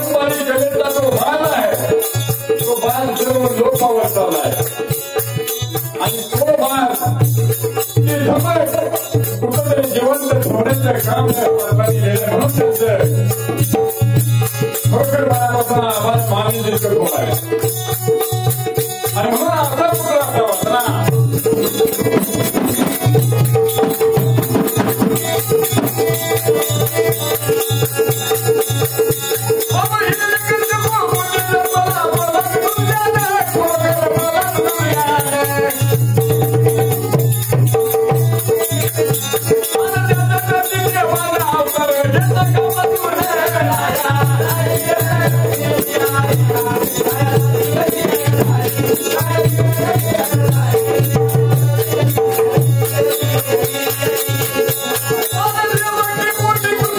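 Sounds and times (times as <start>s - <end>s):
jingling percussion: 0.0s - 56.9s
person singing: 39.7s - 56.9s.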